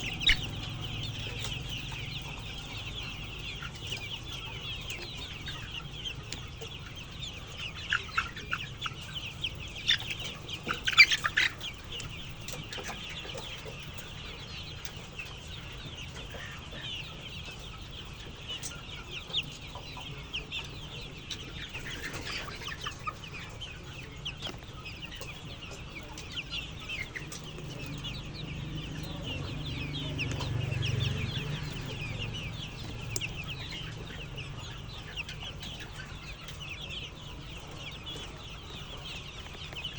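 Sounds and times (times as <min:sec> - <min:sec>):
chickens clucking: 0:00.0 - 0:39.9.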